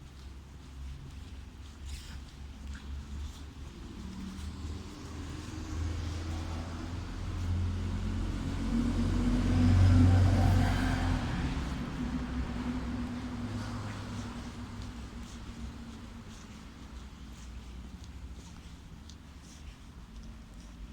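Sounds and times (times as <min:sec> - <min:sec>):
vehicle passing by: 0:03.0 - 0:17.5.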